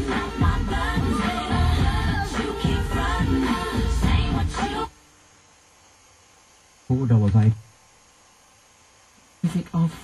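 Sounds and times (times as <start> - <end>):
pop song on car stereo: 0.0 - 5.0.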